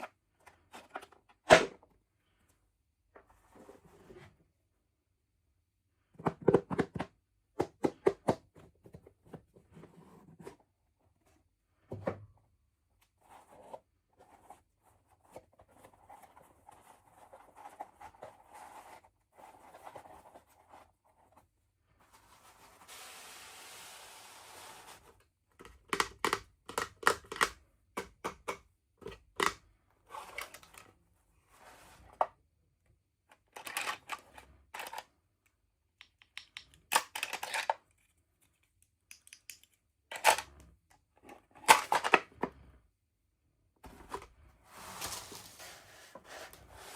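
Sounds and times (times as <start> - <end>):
plastic clicks and snaps: 36.0 - 37.7, 38.4 - 40.7.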